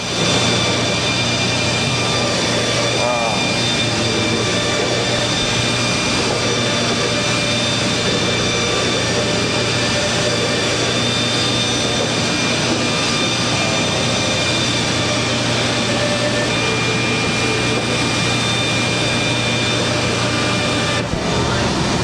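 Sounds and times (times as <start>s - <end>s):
polishing wheels whining: 0.0s - 22.0s.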